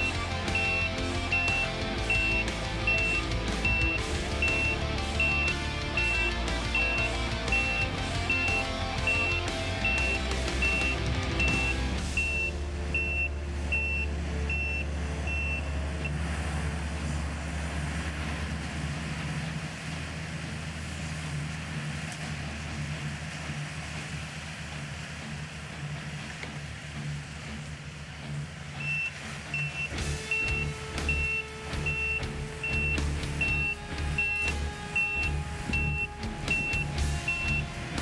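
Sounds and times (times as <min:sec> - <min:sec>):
skid steer engine running: 0:00.0 - 0:18.5
backup alarm beeping: 0:28.8 - 0:37.7.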